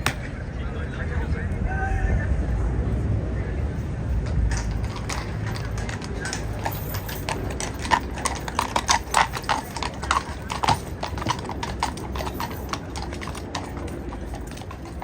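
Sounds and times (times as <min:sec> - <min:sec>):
horse hooves clip-clopping: 0:00.0 - 0:00.3, 0:03.6 - 0:15.0.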